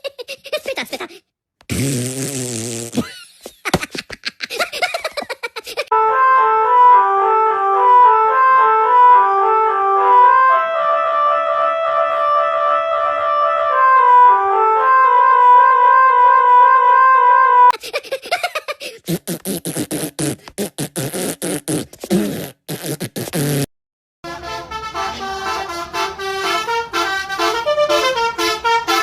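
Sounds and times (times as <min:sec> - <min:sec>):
buzzy horn blast: 0:05.9 - 0:17.7, 0:24.2 - 0:29.0
musical bus horn tune: 0:05.9 - 0:17.7, 0:24.2 - 0:29.0.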